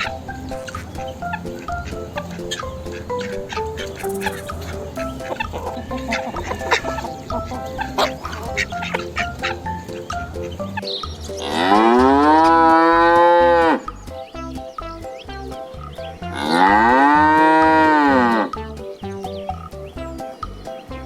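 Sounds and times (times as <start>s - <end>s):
light background music: 0.0s - 21.0s
cow mooing: 11.4s - 13.9s, 16.3s - 18.5s.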